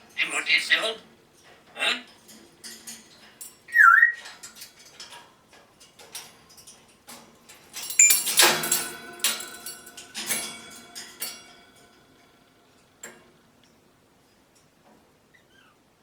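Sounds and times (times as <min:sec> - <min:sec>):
parrot whistling: 0:03.7 - 0:04.2.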